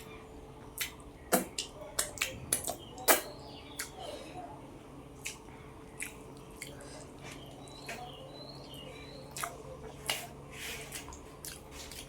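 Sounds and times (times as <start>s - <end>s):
wet chewing and mouth sounds: 5.2s - 8.1s, 9.2s - 12.0s.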